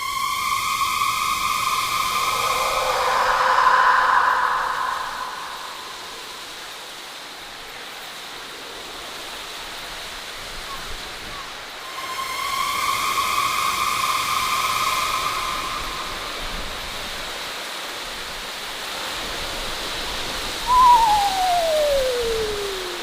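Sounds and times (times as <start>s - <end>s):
eerie howl: 0.0s - 6.9s, 11.8s - 17.5s, 20.6s - 23.0s
wind-like hiss: 0.0s - 23.0s.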